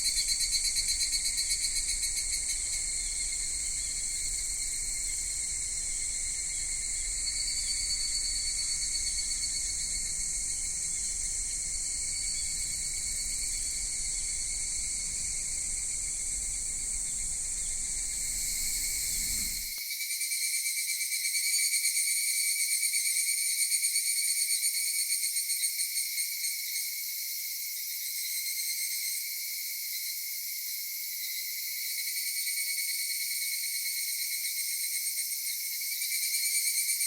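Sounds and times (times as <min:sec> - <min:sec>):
cicadas shrilling: 0:00.0 - 0:19.8
pulsing cicada call: 0:00.0 - 0:21.5.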